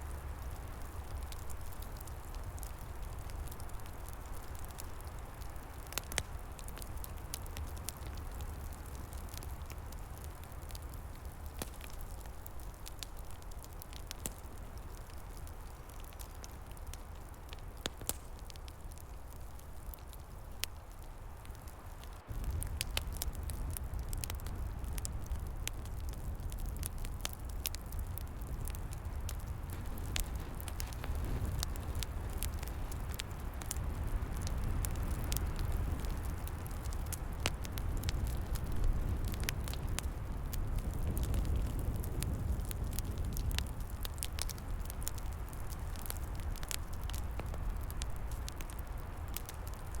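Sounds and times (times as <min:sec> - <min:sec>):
wood fire crackling and popping: 0:00.0 - 0:50.0
steady low rumble: 0:22.3 - 0:48.5.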